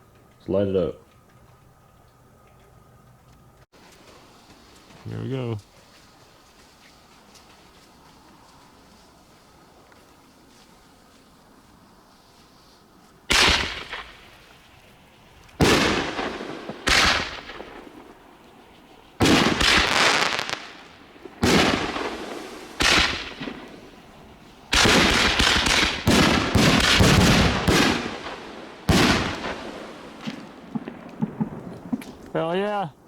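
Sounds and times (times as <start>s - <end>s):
firework shells exploding: 13.3s - 14.8s, 15.5s - 18.3s, 19.1s - 32.4s.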